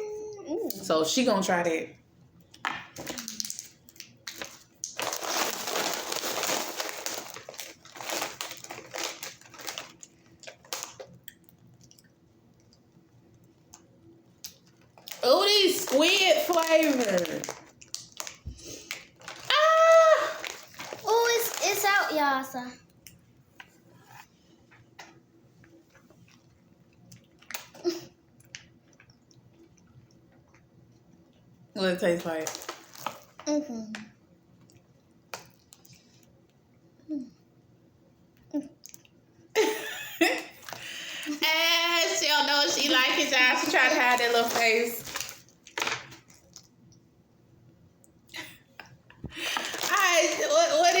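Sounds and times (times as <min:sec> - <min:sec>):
plastic wrapper crinkling: 0:03.0 - 0:11.2, 0:14.4 - 0:22.2, 0:32.2 - 0:33.4, 0:40.6 - 0:46.7, 0:49.3 - 0:51.0
chewing and mouth noises: 0:09.9 - 0:15.1.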